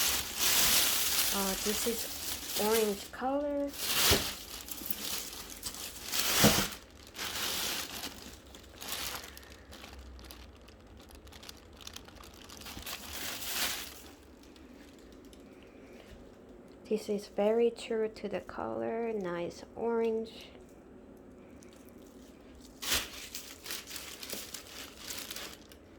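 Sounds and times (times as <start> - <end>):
packaging crinkling: 0.0 - 15.6, 21.1 - 25.9.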